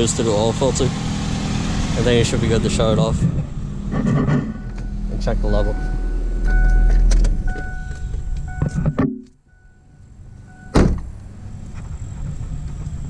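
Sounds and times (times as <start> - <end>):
car engine idling: 0.0 - 13.0
car door shutting: 3.3 - 9.3, 10.7 - 11.9.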